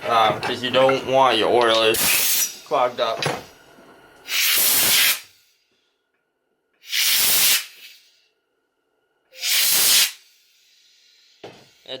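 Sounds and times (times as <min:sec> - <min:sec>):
air blow gun hissing: 0:01.9 - 0:02.9, 0:04.2 - 0:05.5, 0:06.8 - 0:08.2, 0:09.3 - 0:11.9.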